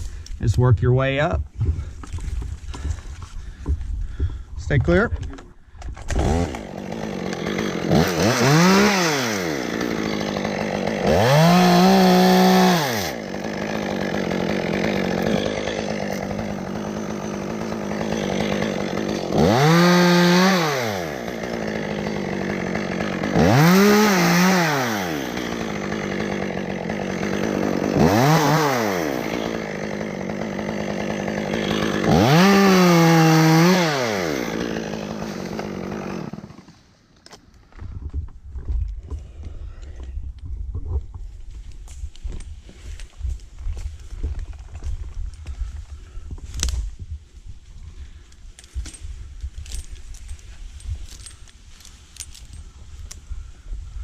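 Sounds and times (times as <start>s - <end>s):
chainsaw revving and idling: 6.0s - 36.9s.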